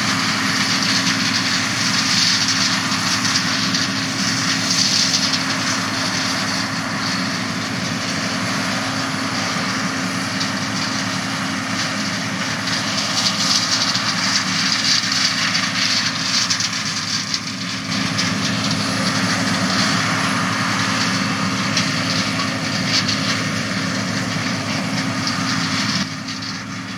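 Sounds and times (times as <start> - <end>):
combine harvester engine hum: 0.0 - 26.9.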